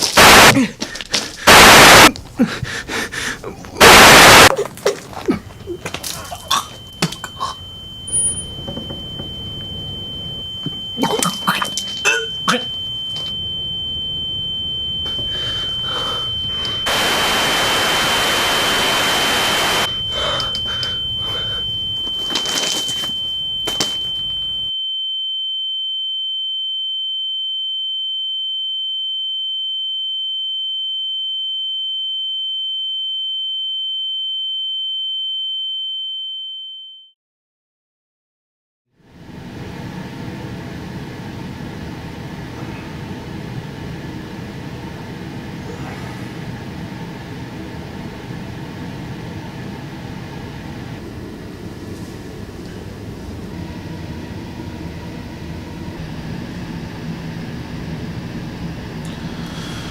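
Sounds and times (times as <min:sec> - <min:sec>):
white-noise hiss burst: 0:00.0 - 0:00.5, 0:01.4 - 0:02.1, 0:03.8 - 0:04.5, 0:16.6 - 0:19.9
piercing high-pitched tone: 0:00.0 - 0:00.6, 0:03.8 - 0:24.7.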